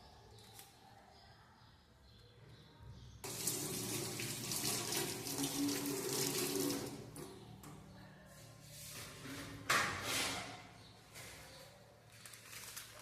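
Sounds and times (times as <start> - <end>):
tap water running into sink: 3.2 - 7.3.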